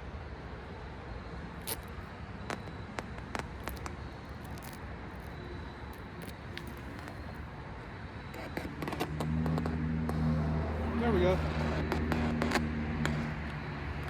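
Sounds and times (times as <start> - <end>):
clicks and crackles: 1.6 - 7.4, 8.4 - 10.2, 10.8 - 14.0.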